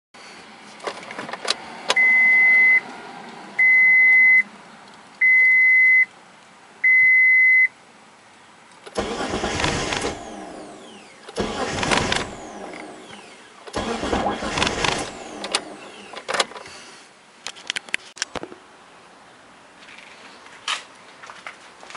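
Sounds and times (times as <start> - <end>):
car engine cranking: 8.9 - 16.7.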